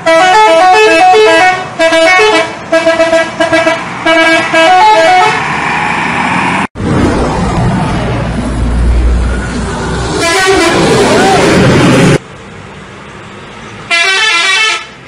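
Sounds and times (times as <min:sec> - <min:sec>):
musical air horn: 0:00.0 - 0:05.4, 0:10.2 - 0:10.9, 0:13.9 - 0:15.0.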